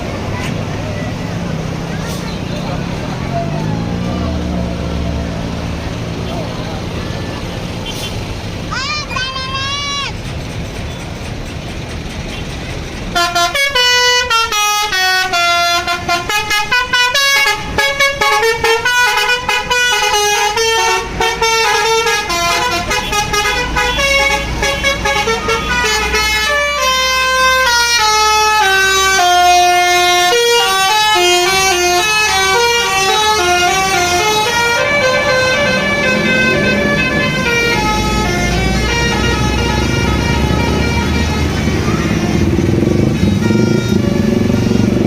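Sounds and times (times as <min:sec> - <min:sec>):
bus horn playing a melody: 0:07.8 - 0:08.2, 0:13.1 - 0:45.0.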